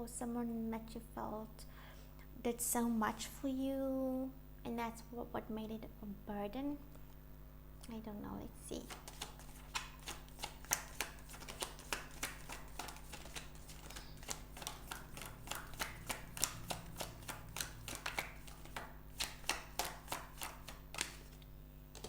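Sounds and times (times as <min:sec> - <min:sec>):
cards being shuffled: 0:08.8 - 0:22.0.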